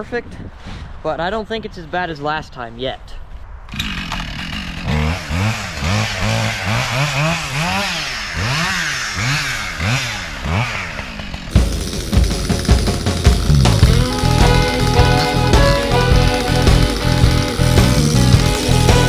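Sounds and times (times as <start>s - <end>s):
chainsaw cutting wood: 3.7s - 19.0s.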